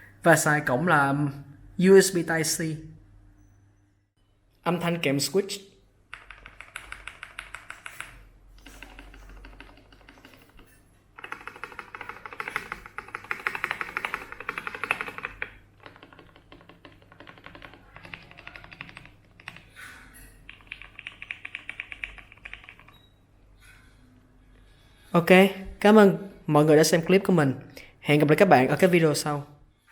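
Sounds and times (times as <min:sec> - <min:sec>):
mechanical keyboard typing: 0:06.1 - 0:23.1.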